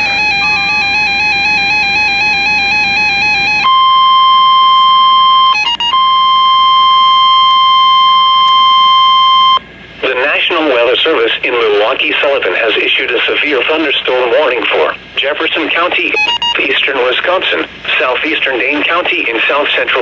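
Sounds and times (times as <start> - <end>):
steady warning alarm tone: 0.0 - 9.6, 15.8 - 17.4
warbling two-pitch tone: 0.0 - 9.6.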